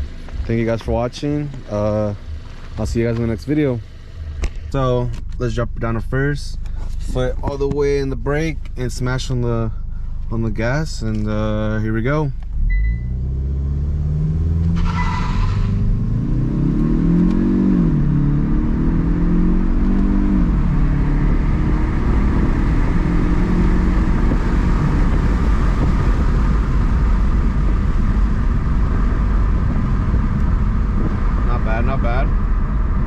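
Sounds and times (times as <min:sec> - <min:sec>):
car engine revving with gear shifts: 0:00.0 - 0:33.0
tyre and wind noise at speed: 0:14.7 - 0:33.0.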